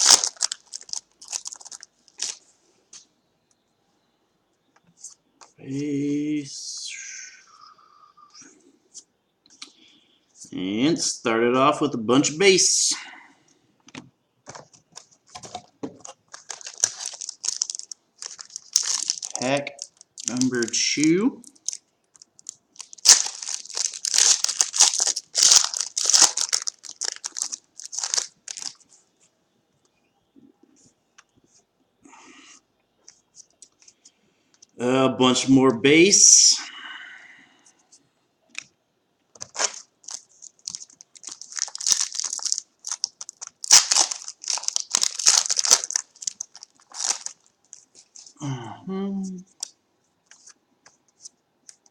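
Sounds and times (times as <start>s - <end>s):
foil wrapper crinkling: 0.0s - 2.4s, 14.4s - 28.9s, 39.3s - 48.4s
cards being handled: 39.4s - 48.3s, 49.6s - 51.9s.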